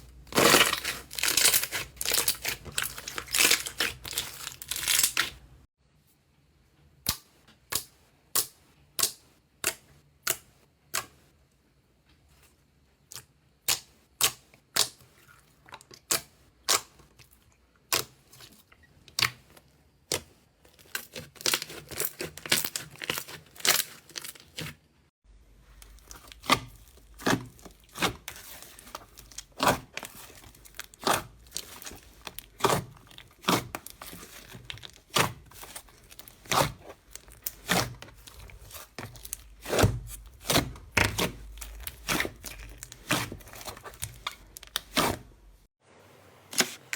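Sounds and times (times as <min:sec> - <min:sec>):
slime popping and crackling: 0:00.3 - 0:05.4, 0:25.8 - 0:45.2.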